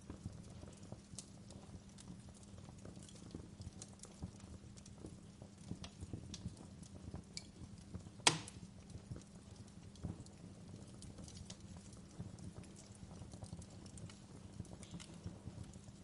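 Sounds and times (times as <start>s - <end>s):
wood fire crackling: 0.0s - 16.0s
loud sharp pop: 8.3s - 8.6s.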